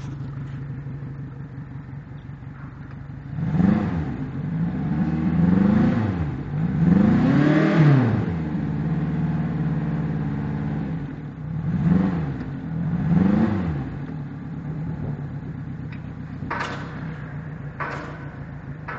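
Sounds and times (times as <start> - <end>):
outboard engine revving and idling: 0.0 - 17.8.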